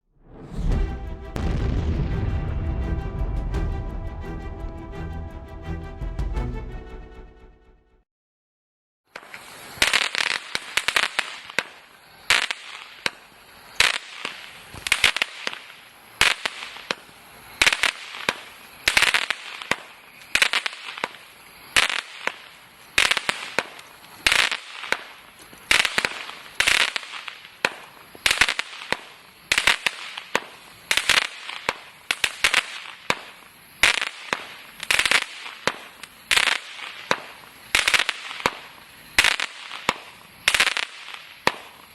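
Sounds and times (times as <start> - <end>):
firework crackling: 0.2 - 4.0, 9.1 - 41.9
firework launch pops: 9.1 - 13.2, 13.8 - 41.9.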